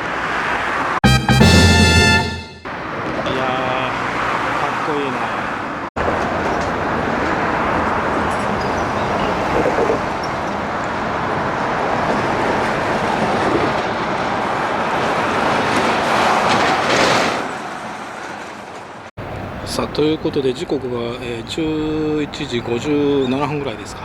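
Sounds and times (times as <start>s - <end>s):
passing vehicles rushing: 0.0s - 24.0s.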